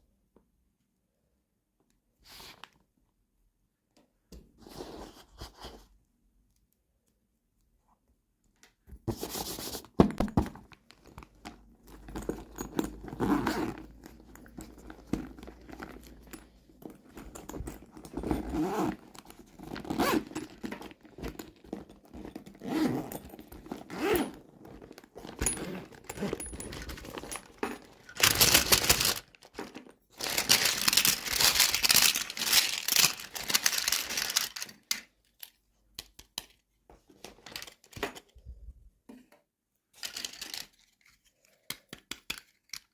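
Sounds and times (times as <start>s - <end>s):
packaging rustling: 10.2s - 35.6s, 40.0s - 41.6s
packaging crinkling and tearing: 24.8s - 35.6s.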